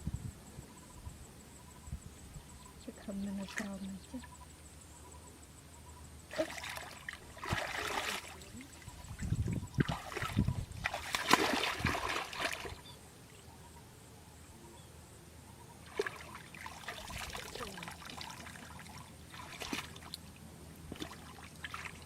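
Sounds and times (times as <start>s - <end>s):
water splashing: 6.3s - 12.9s, 15.9s - 22.0s
water trickling and dripping: 15.9s - 22.0s.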